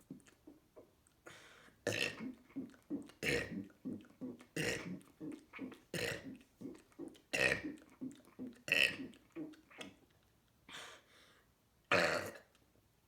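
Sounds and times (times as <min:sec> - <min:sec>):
person burping: 0:01.9 - 0:03.6, 0:04.2 - 0:05.0, 0:05.6 - 0:06.4, 0:11.9 - 0:12.5.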